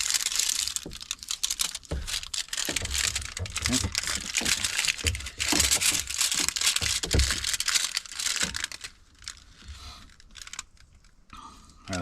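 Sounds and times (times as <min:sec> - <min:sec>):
tape crinkling and crackling: 0:00.0 - 0:12.0
dull handling bumps: 0:00.7 - 0:07.8.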